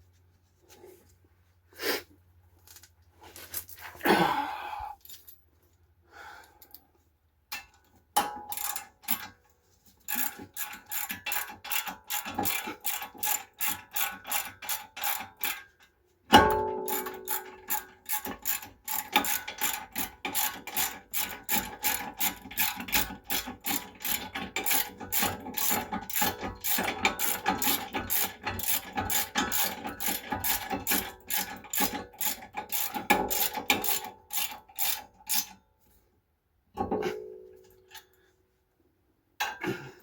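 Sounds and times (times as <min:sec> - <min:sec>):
ratchet wrench clicking: 0:08.5 - 0:09.3, 0:10.1 - 0:15.7, 0:16.9 - 0:35.6.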